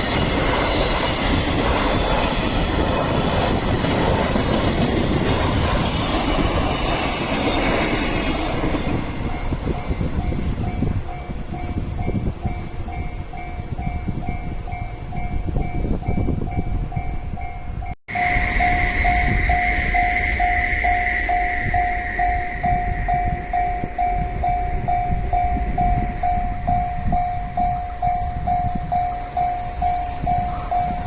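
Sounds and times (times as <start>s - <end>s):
freight train rumbling past: 0.0s - 31.0s
level crossing bell ringing: 13.1s - 31.0s
high hiss: 18.1s - 25.4s.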